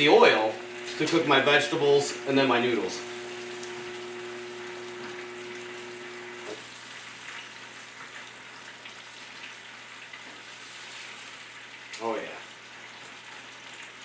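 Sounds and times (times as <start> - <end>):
faint steady hum: 0.0 - 6.7
meat sizzling in oil: 3.0 - 14.0.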